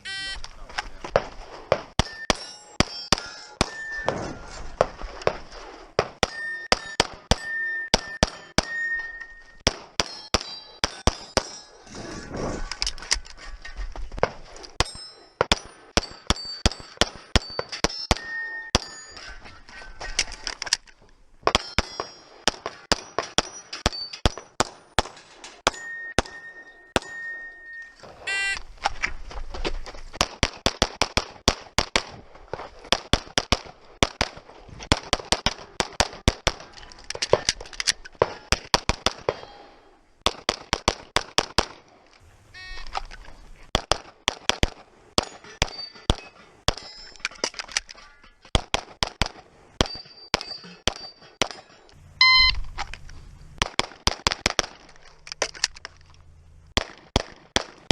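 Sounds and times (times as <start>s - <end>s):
steel targets ringing: 2.0s - 4.6s, 6.2s - 11.9s, 14.8s - 20.2s, 21.5s - 25.0s, 25.6s - 28.5s, 39.3s - 39.9s, 45.2s - 47.3s, 49.8s - 52.6s
rapid pistol fire: 43.7s - 44.8s, 53.6s - 54.9s, 56.7s - 57.9s.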